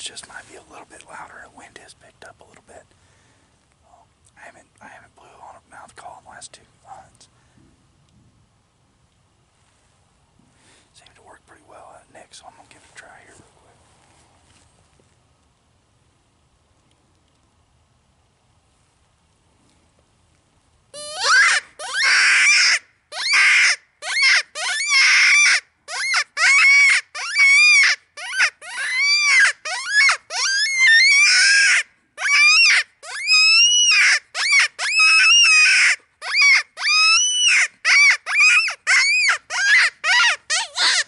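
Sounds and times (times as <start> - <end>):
breaths: 2.9 - 3.7, 7.3 - 7.8, 10.4 - 11.0
predator call distress squeals: 21.0 - 41.0.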